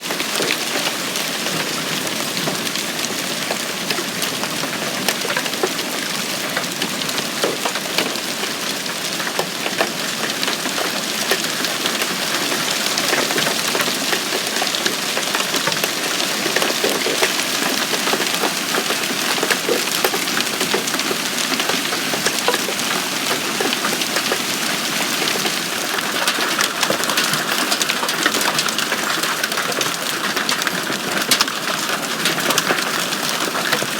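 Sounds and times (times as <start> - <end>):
hail falling: 0.0 - 33.9
hailstones striking hard surfaces: 3.5 - 33.9.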